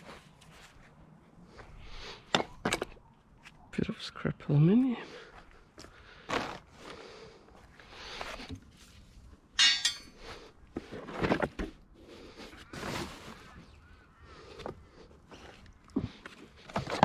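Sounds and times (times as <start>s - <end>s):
ringing metallic clang: 9.6s - 10.2s
scrap metal knocks and clinks: 9.6s - 10.2s.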